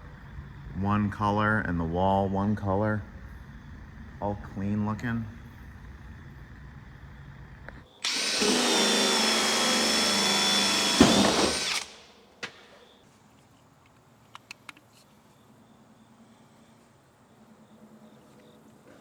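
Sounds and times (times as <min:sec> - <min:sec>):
power drill motor whine: 0:08.0 - 0:12.1
click and light ticks: 0:13.8 - 0:14.9.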